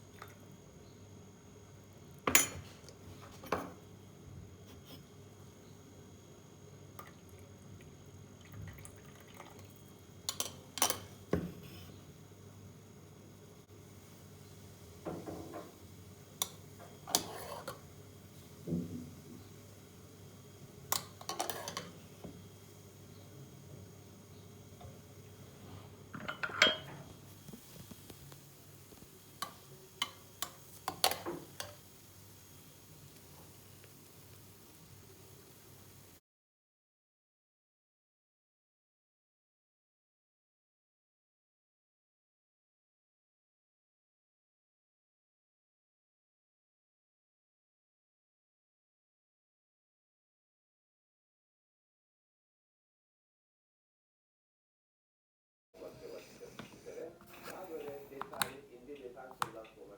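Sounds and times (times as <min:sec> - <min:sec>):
faint steady hum: 0:00.0 - 0:36.2
dishes and cutlery clinking: 0:02.3 - 0:03.8, 0:10.3 - 0:11.1, 0:20.9 - 0:21.9, 0:26.2 - 0:27.1, 0:29.4 - 0:31.8
utensils and dishes clinking: 0:10.3 - 0:11.1, 0:20.9 - 0:22.0, 0:26.2 - 0:27.1.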